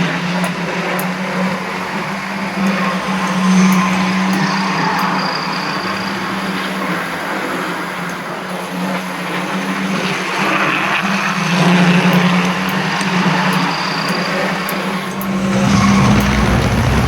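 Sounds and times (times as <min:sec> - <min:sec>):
wheels rattling over rails: 0:15.0 - 0:17.0.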